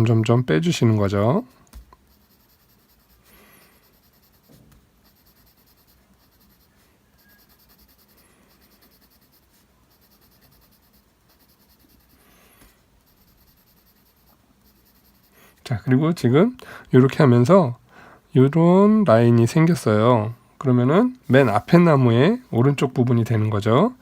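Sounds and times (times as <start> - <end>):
pencil scratching on paper: 2.1 - 15.6, 21.3 - 22.4.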